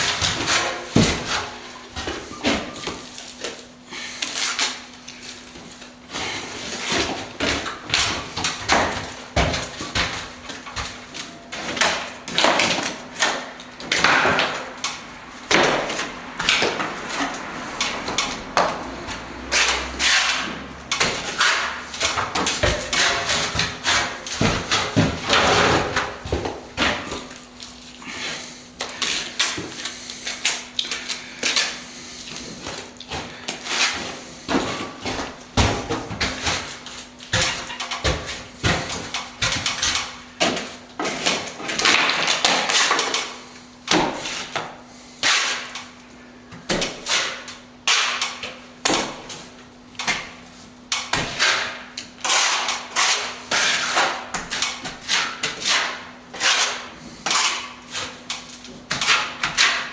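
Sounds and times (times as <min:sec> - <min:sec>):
plastering trowel knocking and scraping: 0:19.4 - 0:27.4, 0:32.4 - 0:43.2, 0:51.0 - 0:59.9.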